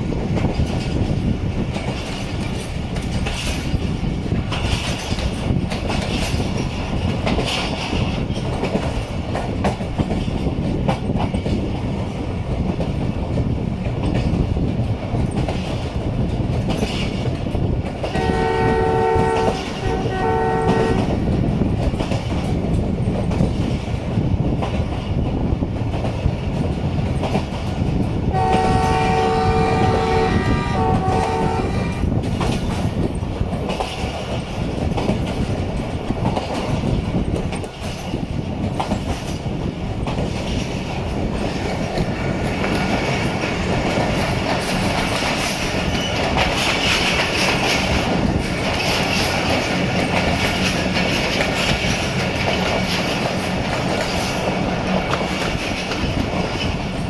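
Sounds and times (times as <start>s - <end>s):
train rumbling and clacking on track: 0.0s - 57.0s
locomotive horn chord: 18.2s - 21.2s, 28.4s - 32.0s.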